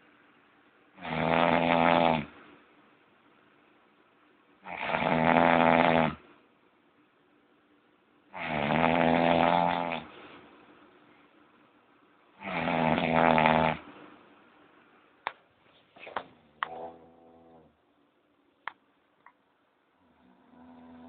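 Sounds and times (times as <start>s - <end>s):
loud snoring: 1.0s - 2.4s, 4.6s - 6.2s, 8.4s - 10.1s, 12.4s - 13.8s, 20.2s - 21.0s
quiet breathing: 9.9s - 11.5s.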